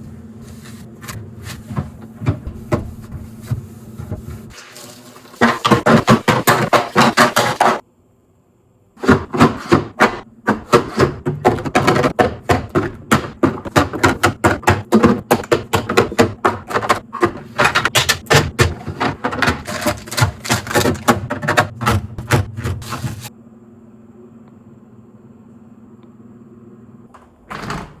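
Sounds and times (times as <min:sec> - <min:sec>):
containers knocking and clattering: 0:05.3 - 0:07.8, 0:09.0 - 0:23.3.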